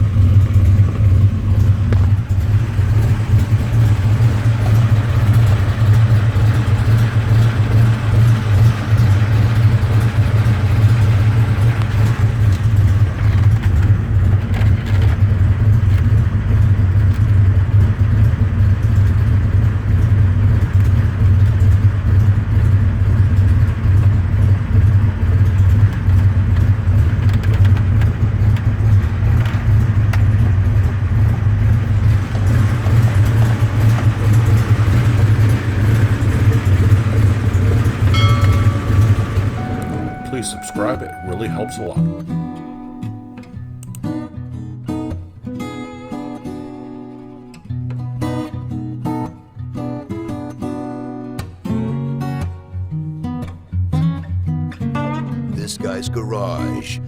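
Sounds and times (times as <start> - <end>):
car engine idling: 0.0 - 43.9.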